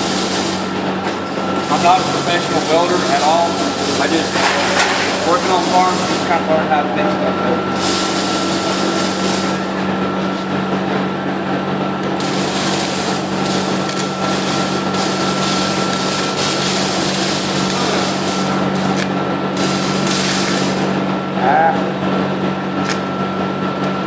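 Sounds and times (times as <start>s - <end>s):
welding arc crackling and sputtering: 0.0s - 11.2s, 11.8s - 21.4s
welding machine humming: 0.0s - 24.0s
electrode scratching against metal: 1.2s - 6.5s, 7.8s - 10.5s.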